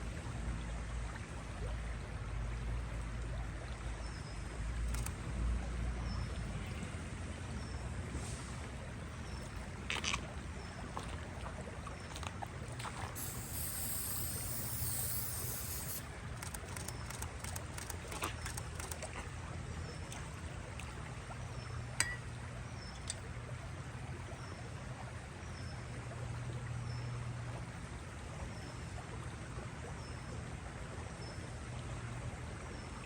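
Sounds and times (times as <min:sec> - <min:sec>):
sharp clicks: 0:04.9 - 0:05.2, 0:13.2 - 0:19.2
high hiss: 0:13.2 - 0:19.0
small bird chirping: 0:13.2 - 0:19.0.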